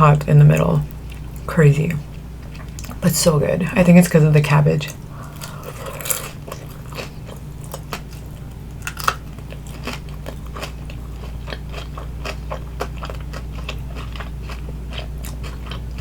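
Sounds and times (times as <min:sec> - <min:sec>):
chewing crispy food: 0:04.9 - 0:16.0.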